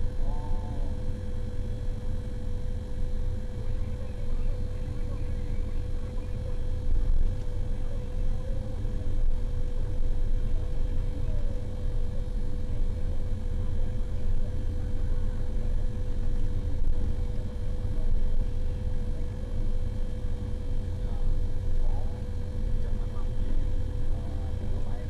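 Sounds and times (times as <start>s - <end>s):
constant engine whine: 0.0s - 25.0s.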